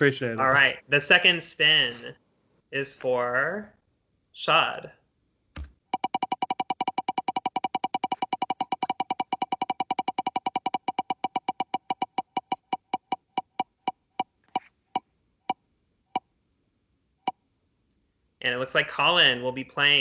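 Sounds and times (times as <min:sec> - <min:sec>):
spinning wheel ticker clicking: 0:05.9 - 0:14.3.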